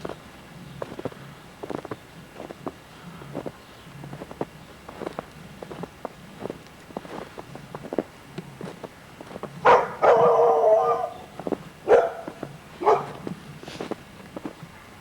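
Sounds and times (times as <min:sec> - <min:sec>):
dog barking: 0:09.6 - 0:13.4.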